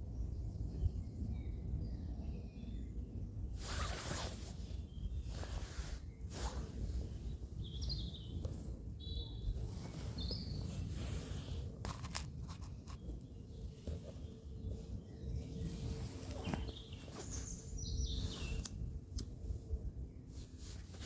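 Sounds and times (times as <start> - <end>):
small bird chirping: 7.1 - 11.3, 12.4 - 18.8.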